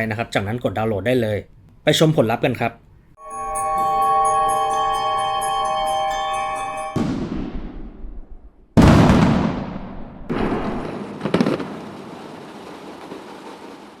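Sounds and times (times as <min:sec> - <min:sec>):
explosion bangs: 0:07.0 - 0:11.9.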